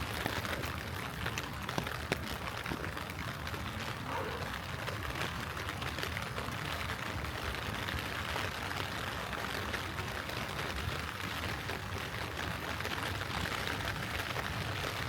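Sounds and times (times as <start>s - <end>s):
light rain falling: 0.0s - 15.0s.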